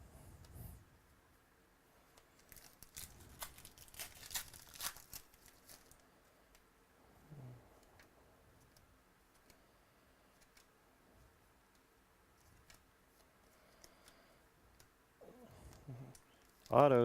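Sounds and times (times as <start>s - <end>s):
trading cards rustling and crinkling: 2.0s - 6.6s, 15.6s - 17.0s.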